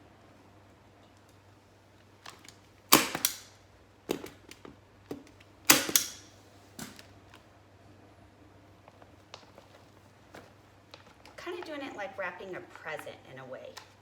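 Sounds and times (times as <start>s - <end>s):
staple gun snaps: 3.0s - 3.5s, 5.7s - 7.0s.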